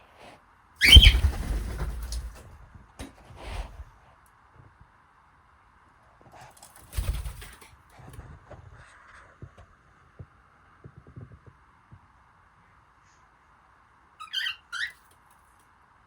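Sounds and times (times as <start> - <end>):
bird wings flapping: 0.8 - 2.5, 6.8 - 7.7.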